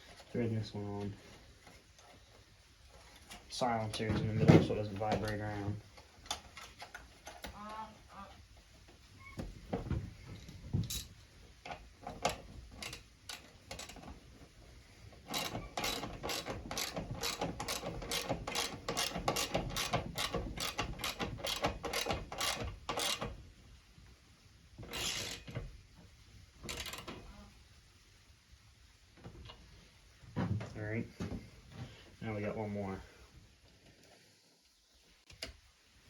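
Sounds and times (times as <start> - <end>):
socket ratchet clicking: 15.3 - 23.3.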